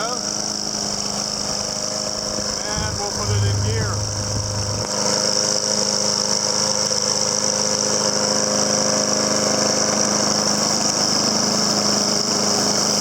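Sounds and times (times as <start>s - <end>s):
steady high whine: 1.2s - 4.9s.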